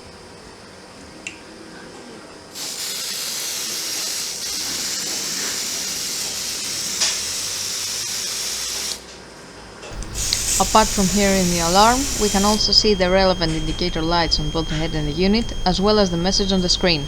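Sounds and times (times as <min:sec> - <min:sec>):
aerosol spray hissing: 0:02.6 - 0:09.0, 0:10.0 - 0:15.3.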